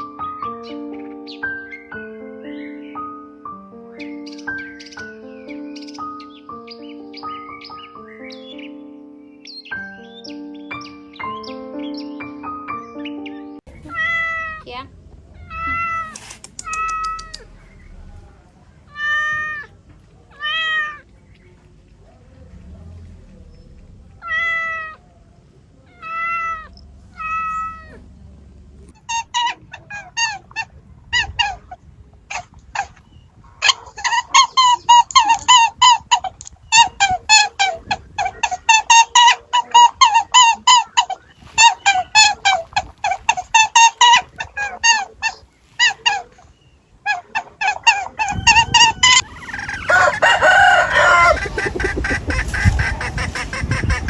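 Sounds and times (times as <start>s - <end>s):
animal calling: 0.0s - 28.1s, 28.8s - 54.0s
rumbling background: 13.6s - 40.4s, 48.1s - 54.0s
chickens clucking: 28.8s - 54.0s
many birds crowing: 29.1s - 54.0s.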